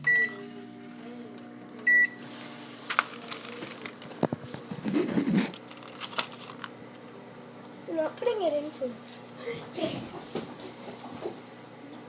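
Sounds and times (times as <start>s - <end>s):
microwave keypad beep: 0.0s - 0.4s, 1.8s - 2.2s
microwave running hum: 0.0s - 12.0s.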